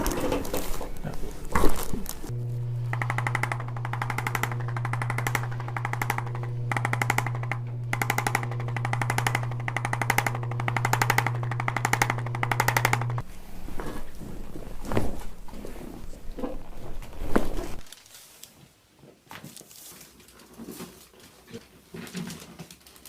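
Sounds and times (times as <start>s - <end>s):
small electric motor humming: 2.2s - 13.3s
rapid mechanical tapping: 2.8s - 13.2s.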